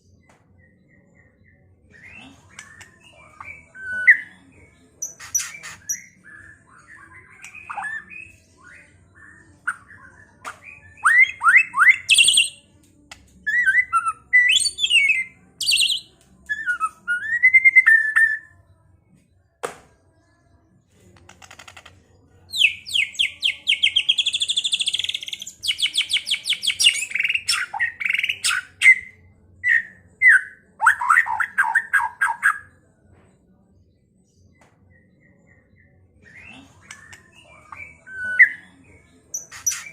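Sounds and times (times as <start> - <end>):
songbird singing whistles: 5.0 - 12.6, 13.5 - 18.5.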